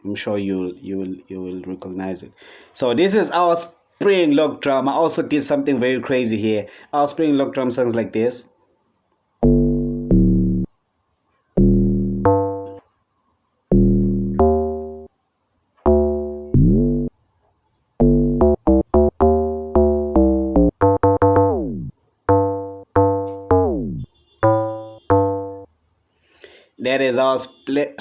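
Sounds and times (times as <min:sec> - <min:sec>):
synthesized log drum bass notes: 0:09.4 - 0:10.7, 0:11.6 - 0:12.8, 0:13.7 - 0:15.1, 0:15.9 - 0:17.1, 0:18.0 - 0:25.6.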